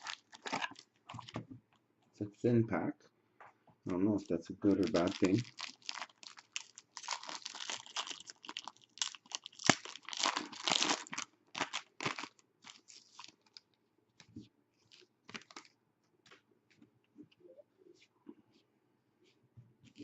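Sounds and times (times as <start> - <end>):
wrapper tearing and crinkling: 0.0 - 1.3, 4.6 - 13.6, 14.9 - 15.7.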